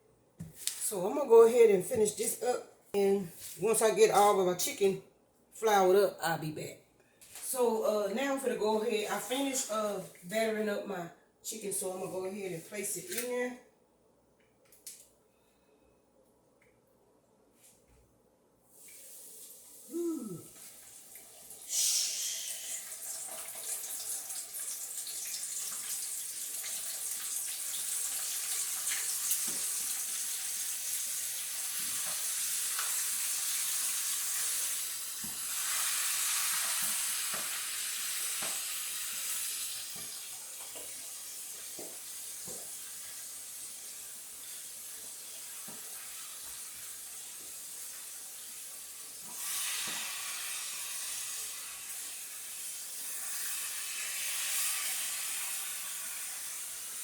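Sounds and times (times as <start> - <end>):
chicken wings sizzling in oil: 18.7 - 57.0
oil popping and crackling: 20.6 - 43.3.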